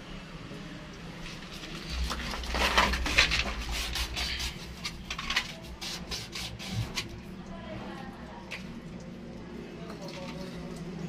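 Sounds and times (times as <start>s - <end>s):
hand scraping and rubbing: 1.2s - 7.2s.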